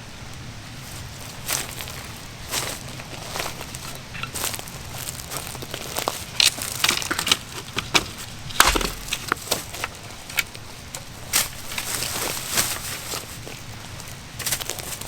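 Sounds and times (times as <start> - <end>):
dry wood snapping and cracking: 3.0 - 15.0.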